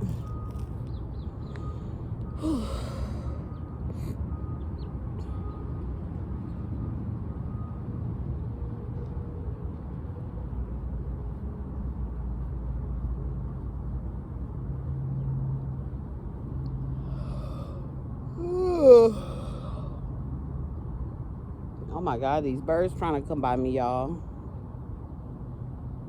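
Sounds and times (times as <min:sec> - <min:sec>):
low outdoor rumble: 0:00.0 - 0:26.0
person sighing: 0:02.4 - 0:04.2, 0:17.0 - 0:20.0.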